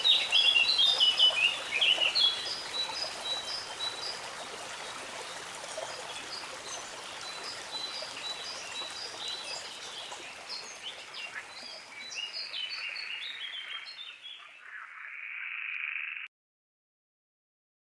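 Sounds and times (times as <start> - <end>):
stream rushing: 0.0 - 13.7
small birds chirping: 0.0 - 16.3.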